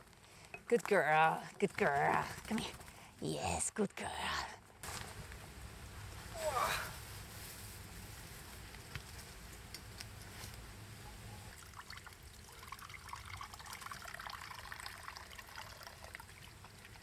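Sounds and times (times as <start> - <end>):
water trickling and dripping: 11.4 - 17.0.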